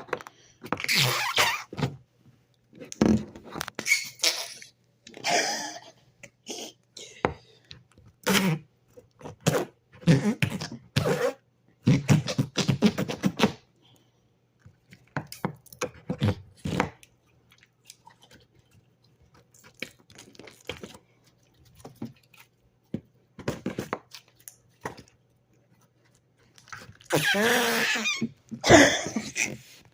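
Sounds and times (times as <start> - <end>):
noise putty fart-like noises: 0.8 - 1.8, 8.2 - 8.7, 9.4 - 13.6, 27.1 - 28.8.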